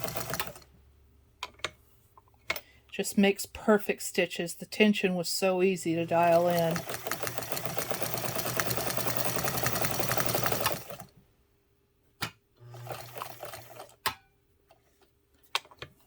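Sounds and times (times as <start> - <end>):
sewing machine running: 0.0 - 0.6, 5.9 - 11.1, 12.6 - 14.0.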